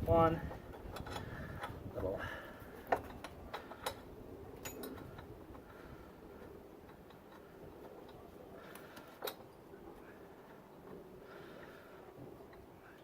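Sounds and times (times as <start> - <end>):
clicks of hand tools and bolts: 4.6 - 5.6.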